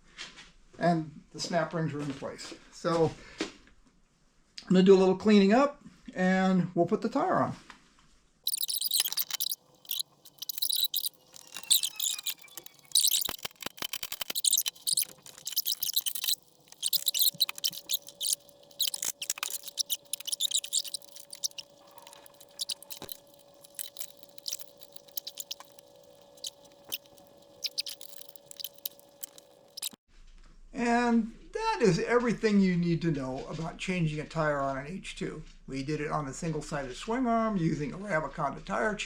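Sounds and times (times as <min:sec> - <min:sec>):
scratchy crackling rubbing: 0:08.5 - 0:30.0.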